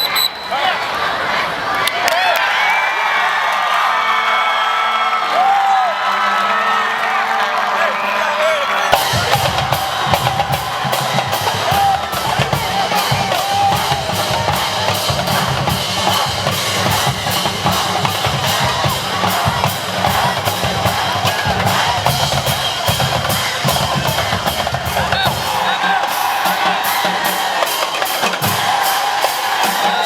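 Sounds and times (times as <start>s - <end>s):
drums playing fast beat: 8.8s - 30.0s.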